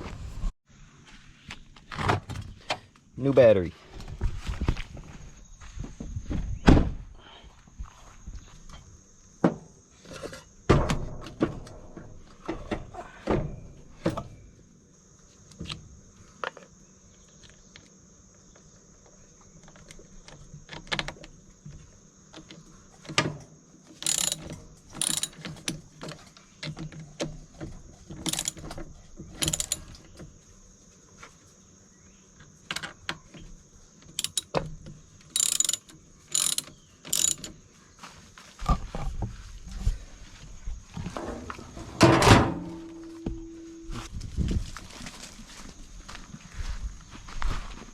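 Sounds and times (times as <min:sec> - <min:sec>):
ratchet wrench clicking: 0:24.0 - 0:25.4, 0:28.2 - 0:28.6, 0:29.4 - 0:29.9, 0:34.2 - 0:34.6, 0:35.3 - 0:37.5
tools clanking on metal: 0:24.0 - 0:27.0, 0:28.0 - 0:30.1, 0:34.1 - 0:37.6.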